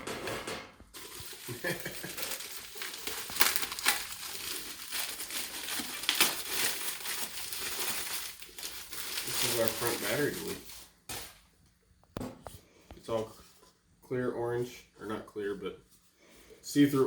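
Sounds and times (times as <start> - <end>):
packing material crinkling: 0.9 - 11.5.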